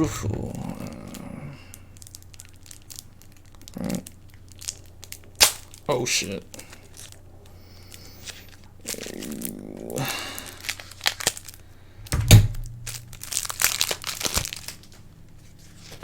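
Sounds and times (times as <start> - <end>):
packaging crinkling and tearing: 0.1 - 12.0, 12.6 - 16.0
thud: 12.0 - 13.4.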